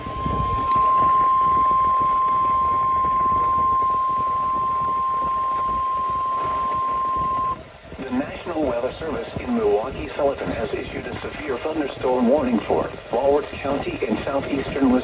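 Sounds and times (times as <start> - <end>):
high warning alarm tone: 0.0 - 7.6
radio static hiss: 0.0 - 15.0.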